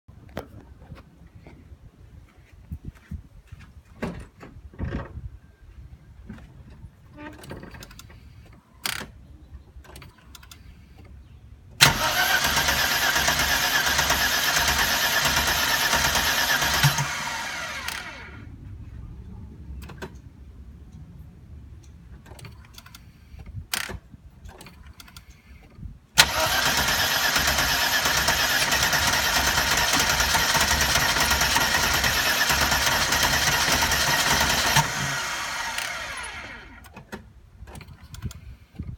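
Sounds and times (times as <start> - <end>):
car engine cranking: 11.8 - 18.4, 26.2 - 38.2.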